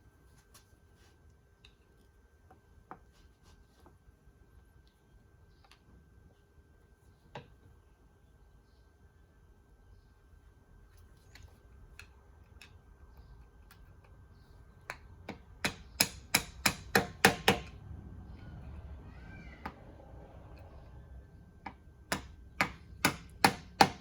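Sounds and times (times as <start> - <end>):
hammer tapping on metal: 14.9 - 17.7, 21.6 - 24.0.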